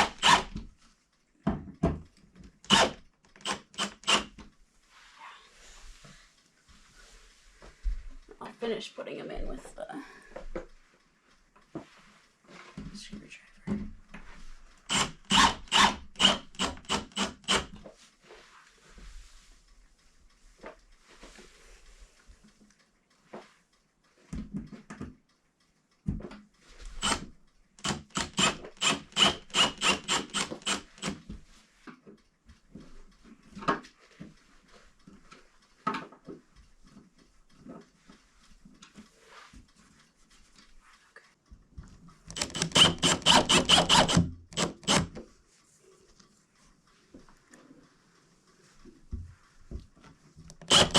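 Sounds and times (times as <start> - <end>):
screwdriver rapid clicking: 0.0 - 0.6, 2.6 - 4.4, 14.9 - 17.8, 27.0 - 31.2, 42.3 - 45.2, 50.5 - 50.9.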